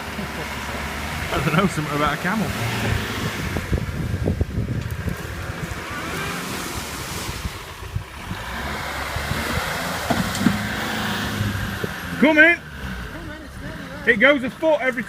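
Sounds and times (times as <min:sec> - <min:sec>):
diesel engine running: 0:00.0 - 0:15.0
wind buffeting microphone: 0:01.1 - 0:12.2.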